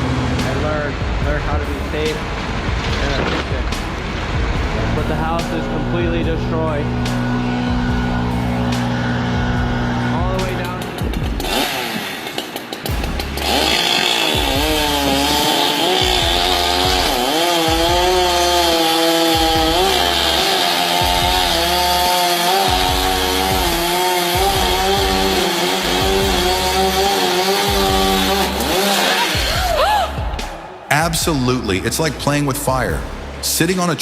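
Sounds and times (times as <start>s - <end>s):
chainsaw cutting wood: 2.0s - 30.8s.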